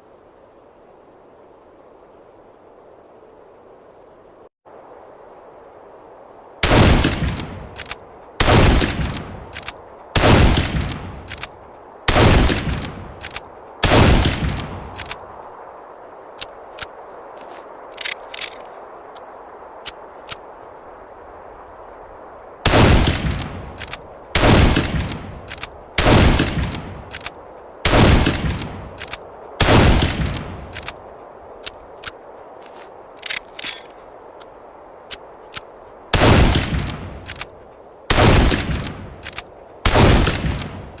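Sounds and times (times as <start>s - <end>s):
rifle shots: 6.6s - 11.4s, 12.1s - 15.1s, 22.7s - 27.2s, 27.9s - 30.9s, 36.2s - 37.4s, 38.1s - 39.3s, 39.9s - 40.8s.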